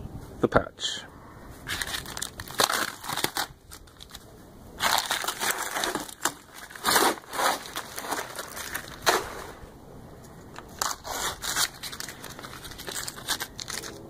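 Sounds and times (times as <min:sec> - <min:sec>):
vinyl sheet crinkling and tearing: 0:01.6 - 0:09.7, 0:10.5 - 0:14.0.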